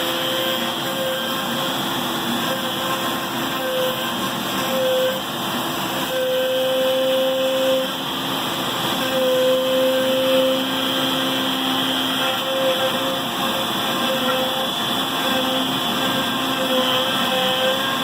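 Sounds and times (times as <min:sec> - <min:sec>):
router spindle and vacuums running: 0:00.0 - 0:18.0
stepper motors whining: 0:00.0 - 0:18.0.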